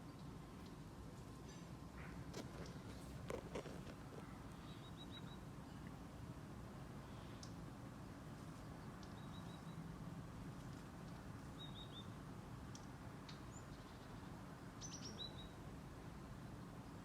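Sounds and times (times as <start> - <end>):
small songbird chirping: 4.5 - 5.9, 8.5 - 9.9, 11.5 - 12.2, 13.3 - 15.6.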